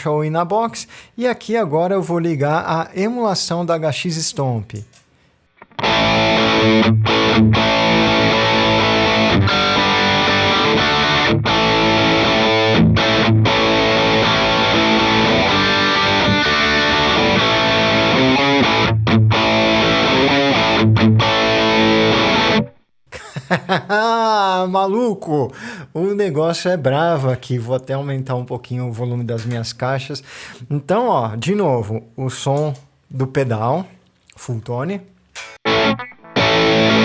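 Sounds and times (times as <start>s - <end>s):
distorted electric guitar riff: 5.6s - 22.8s, 35.4s - 37.0s.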